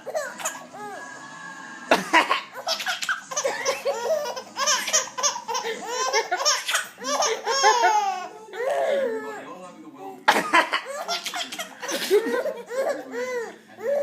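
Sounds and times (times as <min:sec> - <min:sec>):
baby laughing: 0:00.0 - 0:01.0, 0:01.9 - 0:09.4, 0:10.3 - 0:14.0
baby coughing: 0:01.9 - 0:09.2, 0:10.3 - 0:13.0.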